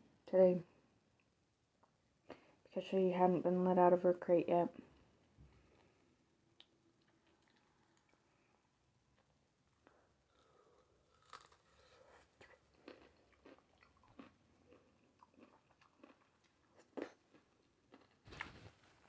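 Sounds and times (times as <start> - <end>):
chewing food crunches: 6.6 - 8.3, 9.2 - 18.6.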